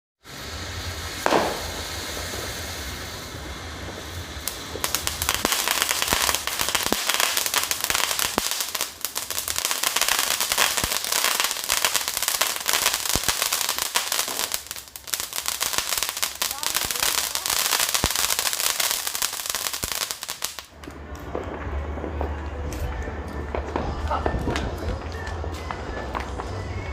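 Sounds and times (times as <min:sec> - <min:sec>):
firecrackers crackling: 0:00.2 - 0:26.9
loud firework bang: 0:01.2 - 0:02.6.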